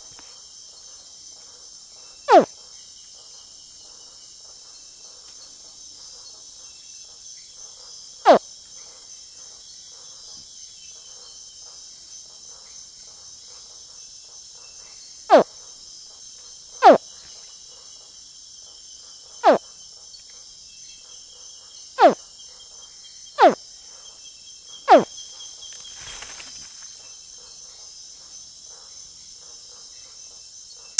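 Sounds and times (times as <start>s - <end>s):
insects chorus: 0.0s - 30.7s
baby crocodile chirps: 2.3s - 2.5s, 24.9s - 25.1s.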